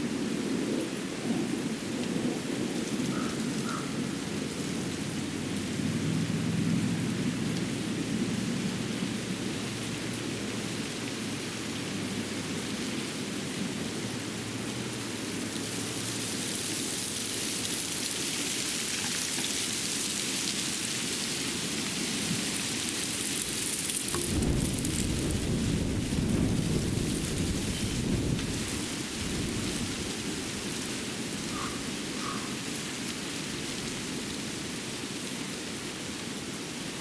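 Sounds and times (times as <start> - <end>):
low rumble: 24.2 - 28.8.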